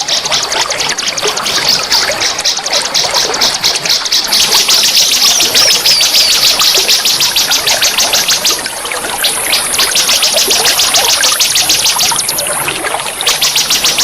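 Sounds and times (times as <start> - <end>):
water trickling: 0.0 - 14.0.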